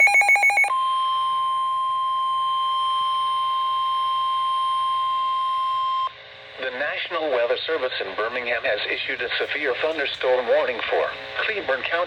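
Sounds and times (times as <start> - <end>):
steady warning alarm tone: 0.0 - 6.1.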